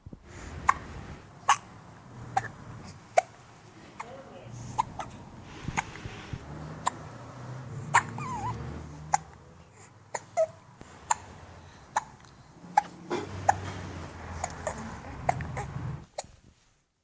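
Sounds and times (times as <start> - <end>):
baby hiccuping: 0.6 - 1.7, 2.3 - 3.4, 4.0 - 5.2, 7.8 - 11.3, 11.9 - 16.4.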